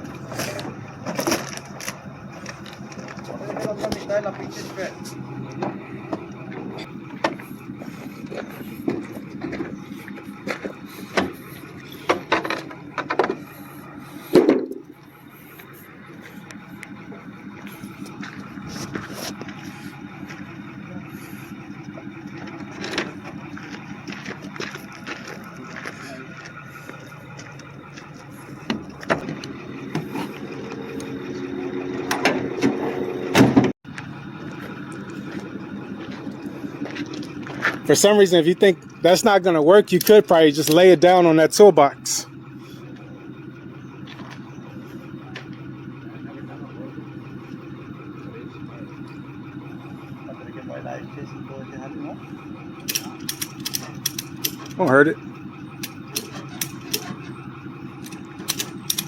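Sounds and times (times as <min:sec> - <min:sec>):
engine idling hum: 0:00.0 - 0:59.0
knocks and clanks of vending machine: 0:32.0 - 0:33.7
loud thump: 0:32.1 - 0:33.7
tie-down strap clicks and knocks: 0:58.0 - 0:59.0.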